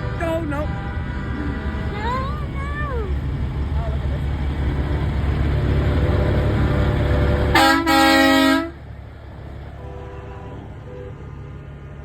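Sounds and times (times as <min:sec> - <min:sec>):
truck air horn: 0:06.6 - 0:08.8, 0:09.8 - 0:11.5.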